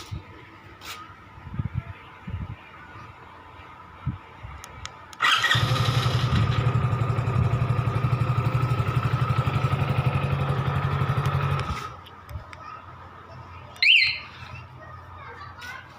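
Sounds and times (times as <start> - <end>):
motorcycle engine starting and idling: 5.1 - 12.1.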